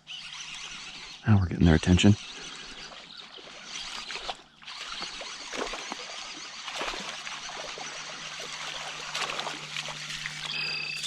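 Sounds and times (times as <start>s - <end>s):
water splashing and trickling: 2.3s - 11.0s.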